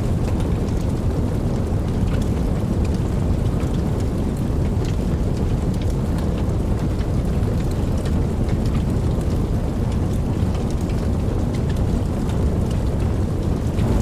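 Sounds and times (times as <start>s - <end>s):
steady rain: 0.0s - 14.0s
distant thunder rumble: 13.0s - 14.0s.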